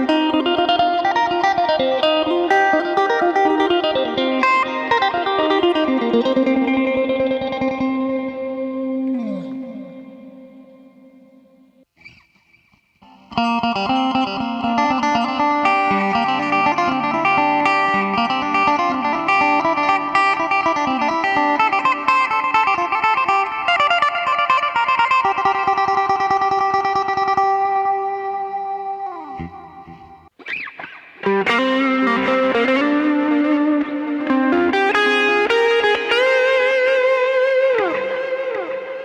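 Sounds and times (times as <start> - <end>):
electric guitar picked notes: 0.0 - 12.3, 13.0 - 39.0.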